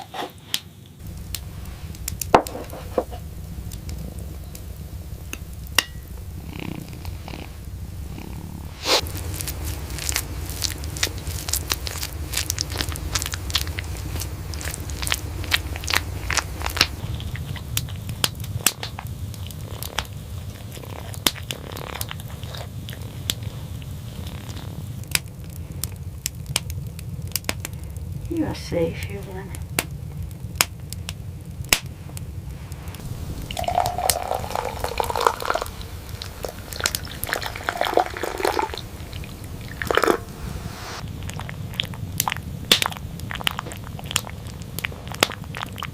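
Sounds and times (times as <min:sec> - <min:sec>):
cat purring: 0:00.0 - 0:45.9
sharp crackles and clicks: 0:00.0 - 0:45.9.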